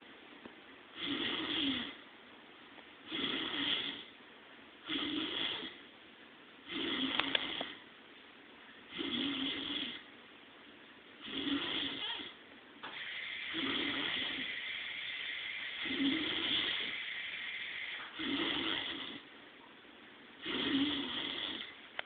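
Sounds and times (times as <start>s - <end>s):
man snoring: 1.0s - 2.0s, 3.1s - 4.1s, 4.8s - 5.8s, 6.7s - 7.8s, 8.9s - 10.1s, 11.2s - 12.3s, 13.0s - 19.3s, 20.4s - 21.8s.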